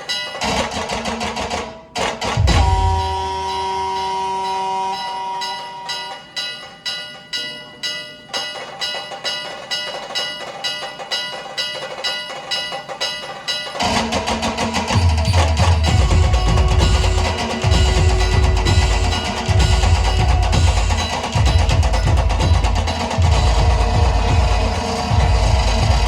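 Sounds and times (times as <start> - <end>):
drums with heavy bass: 0.4 - 4.4, 12.6 - 26.0
brass band music: 15.6 - 26.0.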